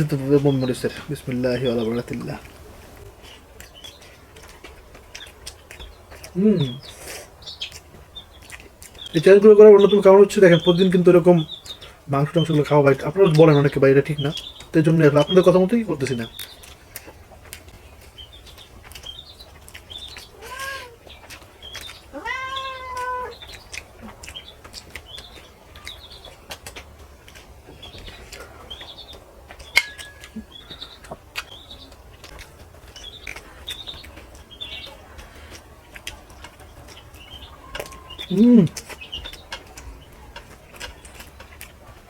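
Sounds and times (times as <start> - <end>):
cat meowing: 20.4 - 21.0, 22.1 - 23.4.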